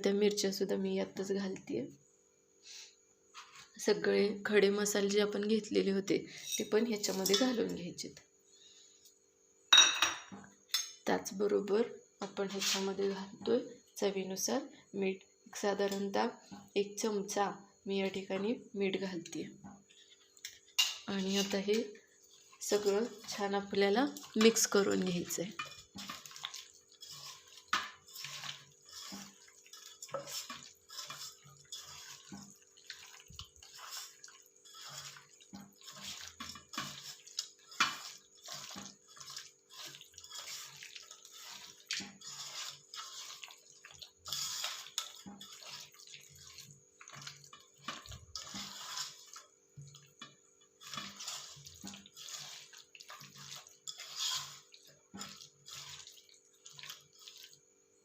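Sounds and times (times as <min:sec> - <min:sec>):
wet squelching and slapping: 0:25.8 - 0:50.2, 0:50.8 - 0:57.6.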